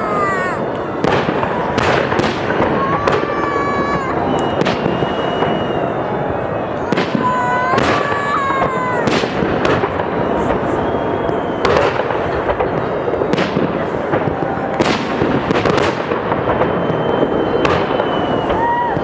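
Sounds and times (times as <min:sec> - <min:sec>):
firework shells bursting: 0:06.8 - 0:19.0.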